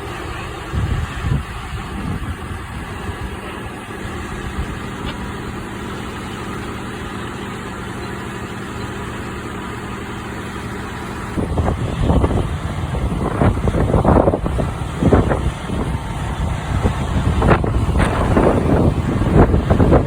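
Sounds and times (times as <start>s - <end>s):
wind buffeting microphone: 0.0s - 5.3s, 11.4s - 20.0s
diesel engine idling: 0.0s - 20.0s.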